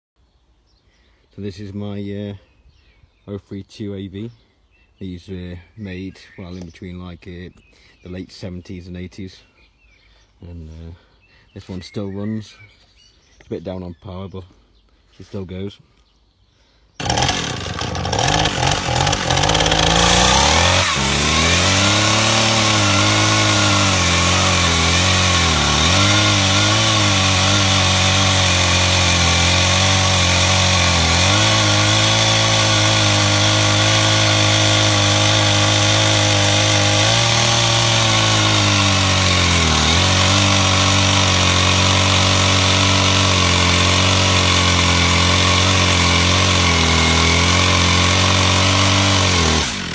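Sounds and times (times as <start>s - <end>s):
chainsaw revving and idling: 17.0s - 49.9s.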